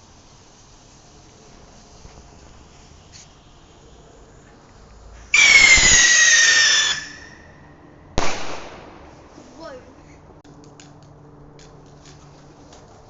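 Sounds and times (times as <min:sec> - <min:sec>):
whistling firework: 0:01.1 - 0:04.4, 0:05.2 - 0:07.6, 0:08.2 - 0:09.2.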